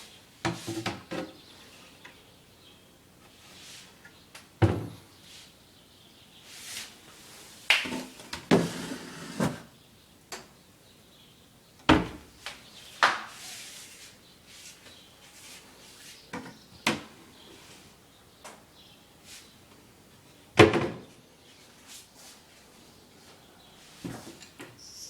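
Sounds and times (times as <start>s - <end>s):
cabinet doors and drawers closing: 7.9s - 9.7s
drawers sliding: 8.5s - 9.7s.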